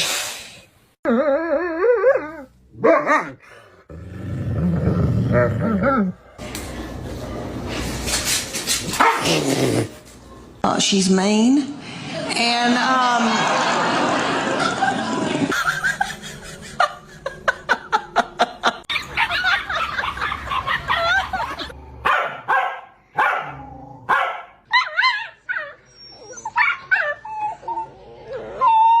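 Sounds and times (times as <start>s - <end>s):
dogs barking: 8.9s - 9.4s, 22.0s - 25.3s
dogs yipping and whining: 24.7s - 29.0s.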